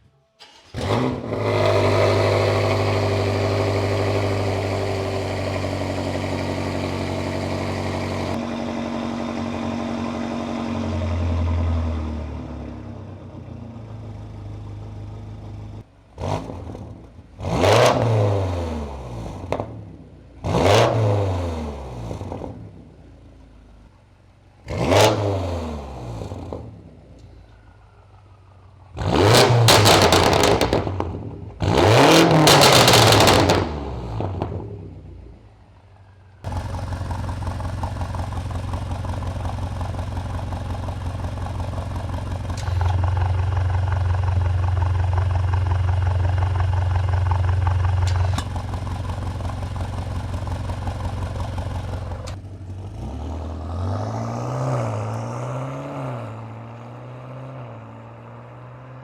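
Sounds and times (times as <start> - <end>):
car pulling away shifting gears: 0.4 - 15.8, 29.0 - 34.7, 36.5 - 59.0
car engine revving and idling: 0.4 - 59.0.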